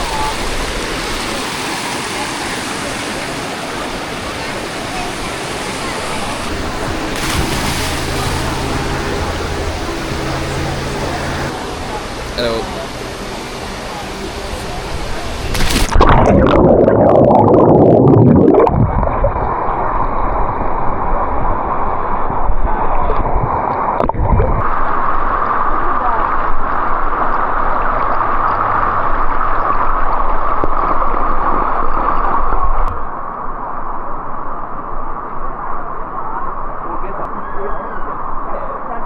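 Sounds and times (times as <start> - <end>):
creek water rushing over rocks: 0.0 - 18.8.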